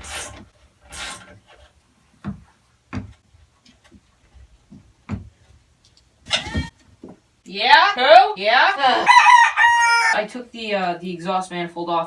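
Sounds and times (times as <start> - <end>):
light knocks and clunks: 2.2 - 5.5.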